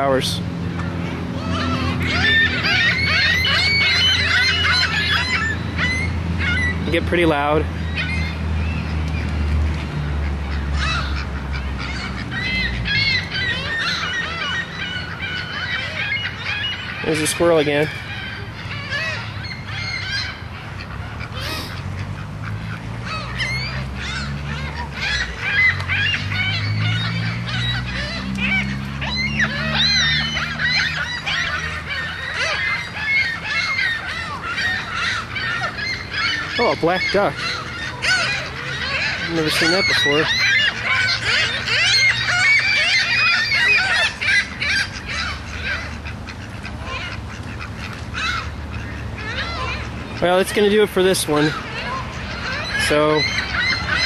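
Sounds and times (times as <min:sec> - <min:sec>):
gulls and waterfowl squawking: 0:00.0 - 0:54.0.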